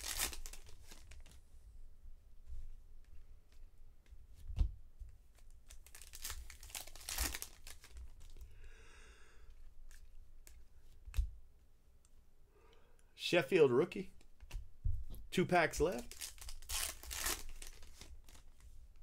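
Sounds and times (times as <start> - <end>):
foil pack tearing and crinkling: 0.0 - 1.2, 5.9 - 8.3, 16.1 - 18.4.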